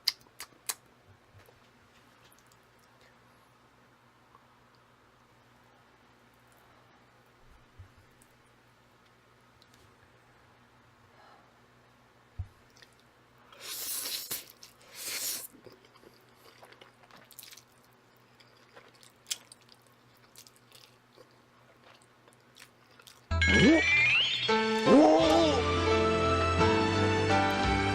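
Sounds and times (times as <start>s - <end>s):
person slurping noodles: 13.6s - 15.6s
chewing with wet mouth clicks: 15.4s - 23.3s
music: 23.3s - 27.9s.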